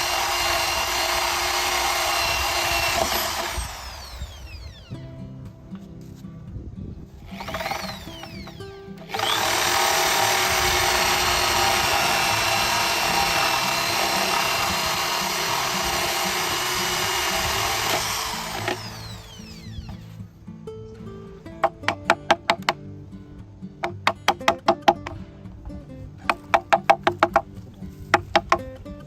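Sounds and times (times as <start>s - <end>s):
power tool running: 0.0s - 5.1s, 7.2s - 20.2s.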